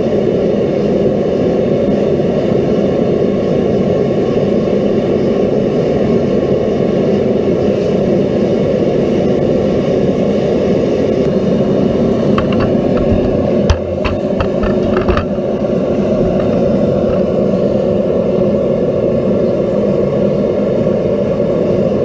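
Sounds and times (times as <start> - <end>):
forge rushing noise: 7.4 - 22.0.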